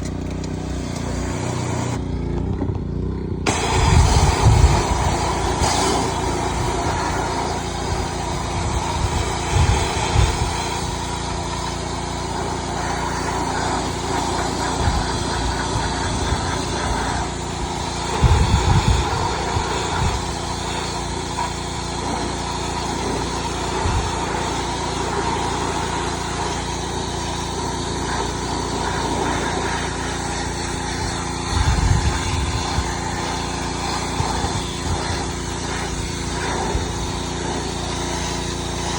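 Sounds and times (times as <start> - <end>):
water spray hissing: 0.0 - 2.0, 3.5 - 38.9
pressure washer engine running: 0.0 - 38.9.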